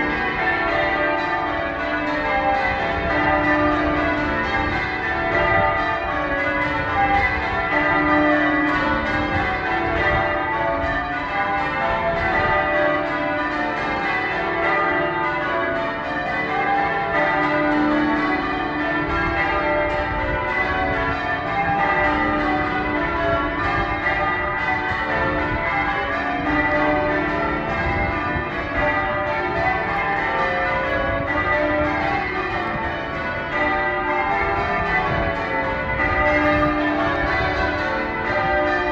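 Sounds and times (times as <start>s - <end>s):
church bells change ringing: 0.0s - 38.9s.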